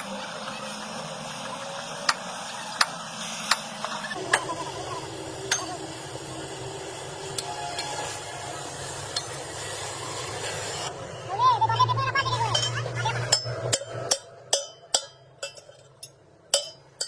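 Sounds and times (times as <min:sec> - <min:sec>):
steady hiss: 0:00.0 - 0:10.9.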